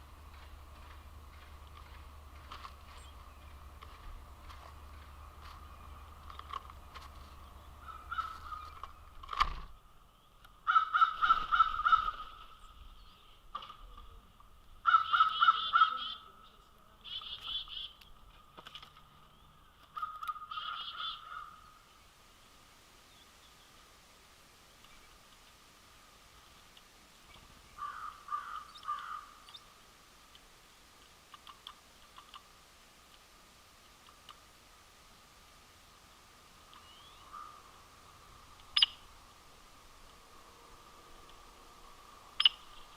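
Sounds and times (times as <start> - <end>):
bird hoarse calls: 0.0 - 9.8, 10.4 - 14.0, 14.7 - 21.8, 27.3 - 29.8, 36.7 - 39.2, 42.2 - 42.9
gull calling: 7.5 - 9.0, 10.6 - 12.8, 14.8 - 16.4, 19.8 - 21.8, 27.8 - 29.6, 36.8 - 37.8, 42.4 - 42.9
sharp clicks: 30.3 - 32.5.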